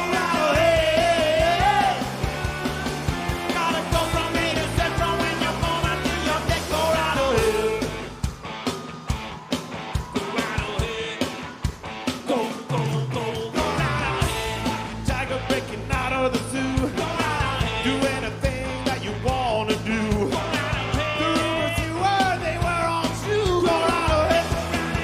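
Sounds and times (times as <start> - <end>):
person shouting lead vocal: 0.0 - 2.9, 16.6 - 25.0
bass guitar: 0.0 - 25.0
drums: 0.0 - 25.0
electric guitars: 0.0 - 25.0.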